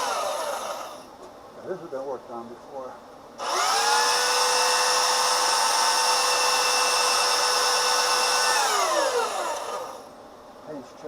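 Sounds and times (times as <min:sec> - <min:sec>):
power sander whining: 0:00.0 - 0:01.0, 0:03.4 - 0:10.1.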